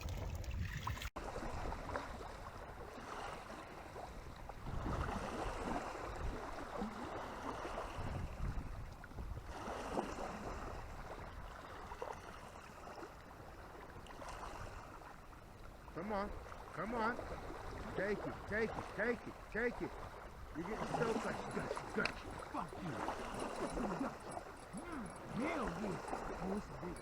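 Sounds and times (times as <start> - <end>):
water rushing: 0.0 - 3.8, 15.9 - 27.0.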